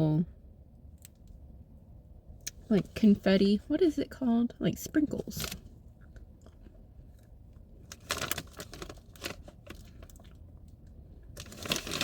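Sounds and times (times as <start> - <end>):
plastic bag crinkling: 7.8 - 10.4, 11.3 - 12.0.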